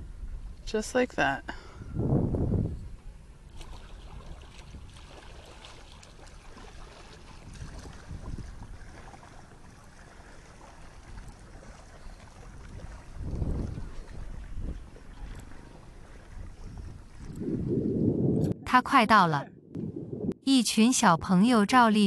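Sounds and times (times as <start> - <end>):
water lapping and splashing: 2.8 - 18.1
paddle strokes: 3.0 - 17.7.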